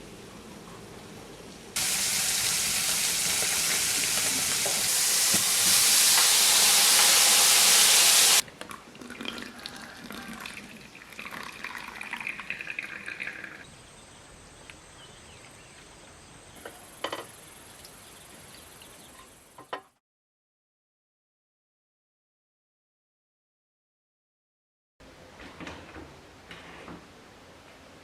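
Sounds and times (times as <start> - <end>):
tap water running into sink: 1.8 - 8.4.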